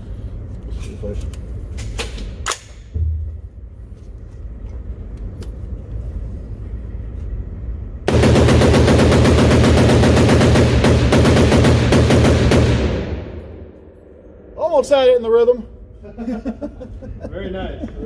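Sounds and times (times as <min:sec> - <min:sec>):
rapid rifle shots: 0:08.1 - 0:13.5.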